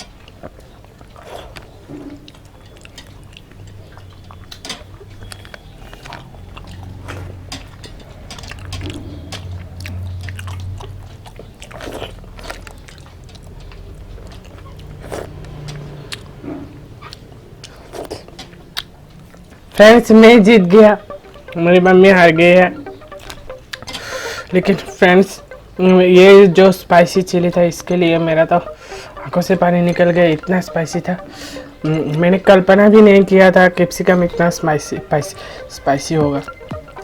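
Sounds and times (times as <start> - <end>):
mouth clicks and smacks: 0.0 - 16.4, 22.9 - 24.8
chewing and biting food: 0.0 - 19.8, 23.0 - 24.3.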